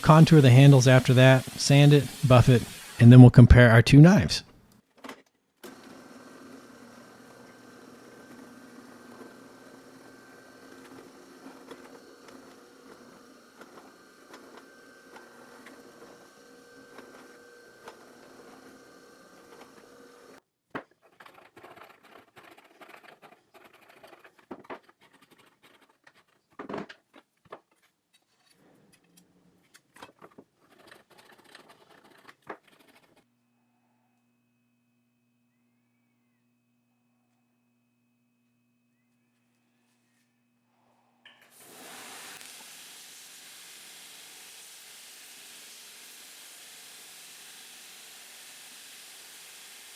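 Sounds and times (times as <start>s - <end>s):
power tool humming: 0.0s - 3.3s, 41.5s - 49.9s
scraping clicking and tapping by hand: 20.8s - 33.3s.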